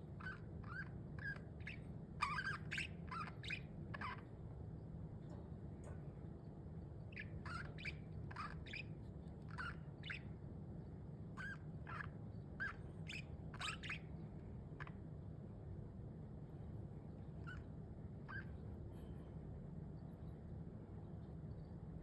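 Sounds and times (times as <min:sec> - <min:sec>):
steady low hum: 0:00.0 - 0:22.0
budgerigars chirping: 0:00.2 - 0:04.2, 0:07.1 - 0:08.9, 0:09.5 - 0:10.3, 0:11.4 - 0:14.0.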